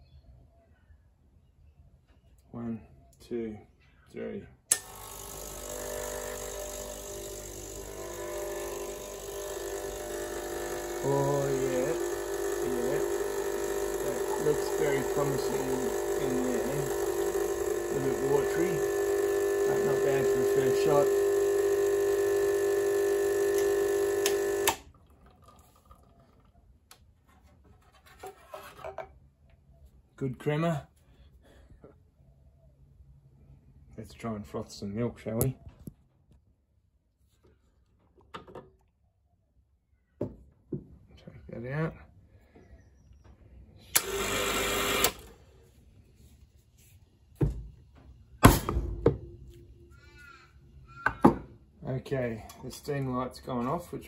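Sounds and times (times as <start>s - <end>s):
espresso machine pump humming: 4.7s - 24.8s, 44.0s - 45.3s.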